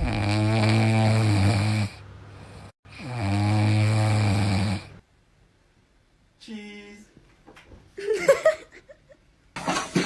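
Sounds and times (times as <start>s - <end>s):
animal snoring: 0.0s - 5.0s.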